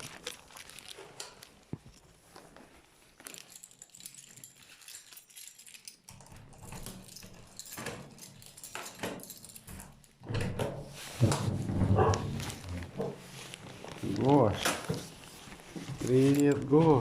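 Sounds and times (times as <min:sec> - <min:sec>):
keys jangling: 0:03.3 - 0:10.2
dog's excited noises: 0:11.9 - 0:13.3.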